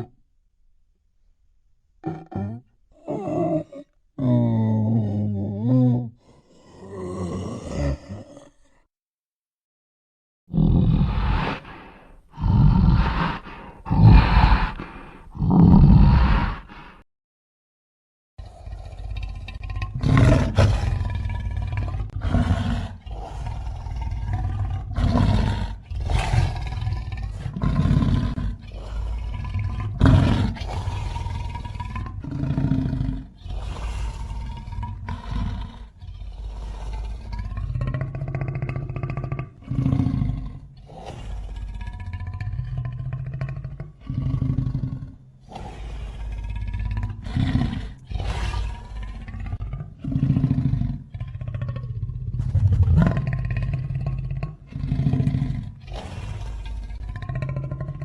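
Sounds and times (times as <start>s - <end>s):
monster roars and growls: 2.0s - 8.8s, 10.5s - 17.0s, 52.2s - 55.2s
deep rumble: 52.3s - 53.5s.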